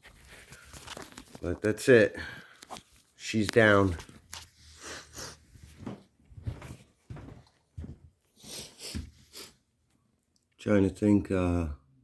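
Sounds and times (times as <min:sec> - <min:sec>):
man sniffling: 0:04.7 - 0:05.5, 0:08.4 - 0:09.7.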